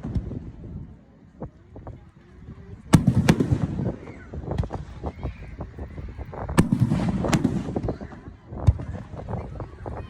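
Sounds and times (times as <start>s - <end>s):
fireworks crackling: 2.7s - 10.0s
loud firework bursts: 2.9s - 9.6s.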